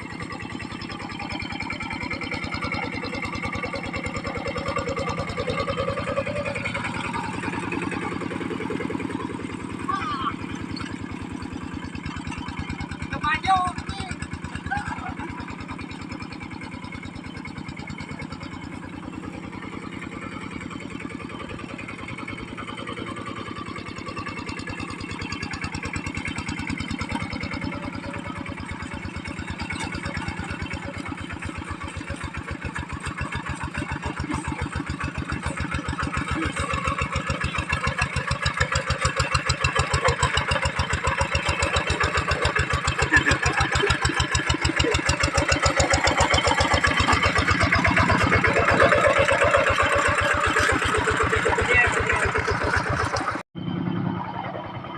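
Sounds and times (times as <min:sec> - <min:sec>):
diesel engine running: 0:00.0 - 0:54.9.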